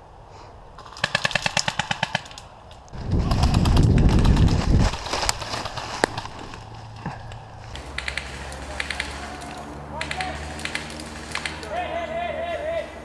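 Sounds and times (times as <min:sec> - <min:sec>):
scattered ticks: 0:07.3 - 0:11.7
airsoft gun firing full-auto: 0:07.8 - 0:09.3, 0:10.0 - 0:11.7.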